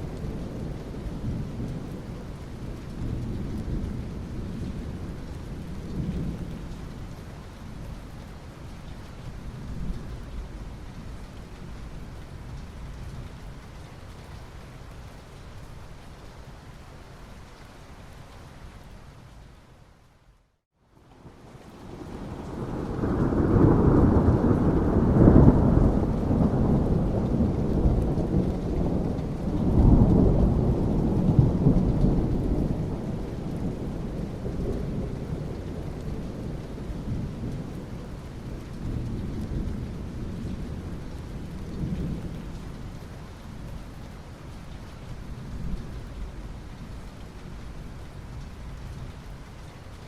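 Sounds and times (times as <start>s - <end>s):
steady rain: 0.0s - 50.0s
rolling thunder: 21.3s - 42.7s.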